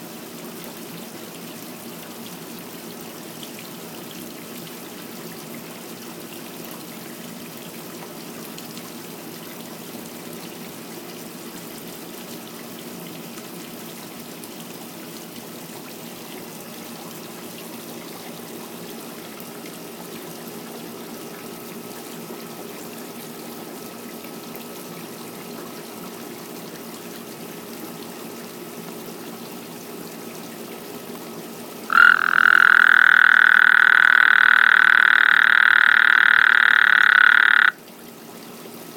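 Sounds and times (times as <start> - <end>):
water trickling: 15.2 - 38.9
frog calling: 31.9 - 37.8.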